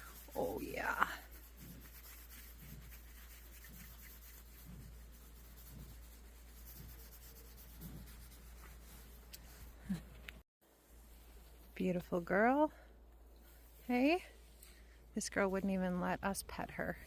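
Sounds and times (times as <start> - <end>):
hand scratching cow's hair: 0.0 - 9.8.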